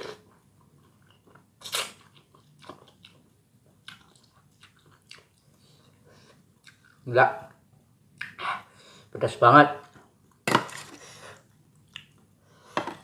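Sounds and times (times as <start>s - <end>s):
person biting and chewing: 1.6s - 3.2s.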